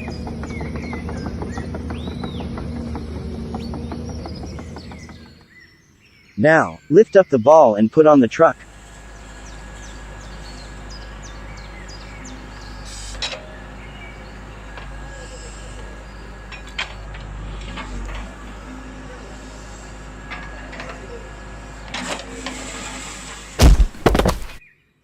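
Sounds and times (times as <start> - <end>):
electric motors whirring: 8.6 - 24.6
sharp knocks: 23.6 - 24.6.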